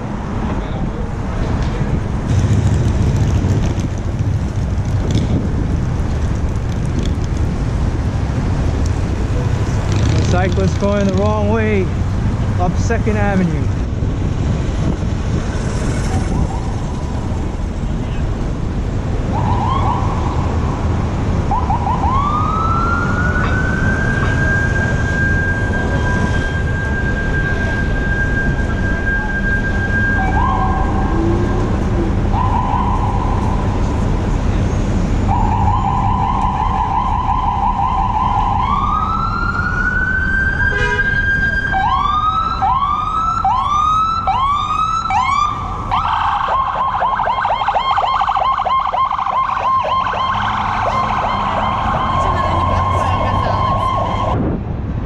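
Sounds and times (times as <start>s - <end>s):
steady traffic: 0.0s - 55.0s
wind rumble: 0.0s - 55.0s
ambulance siren: 16.0s - 17.7s, 19.2s - 34.4s, 35.2s - 54.5s.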